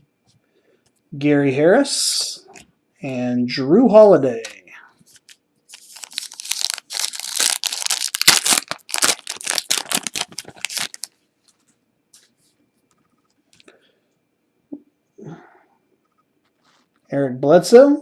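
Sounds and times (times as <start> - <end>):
card pack wrapper tearing and crinkling: 5.2 - 11.2.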